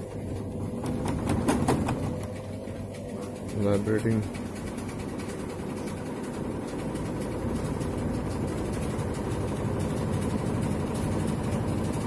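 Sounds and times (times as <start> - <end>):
washing machine spin cycle: 0.0 - 12.0.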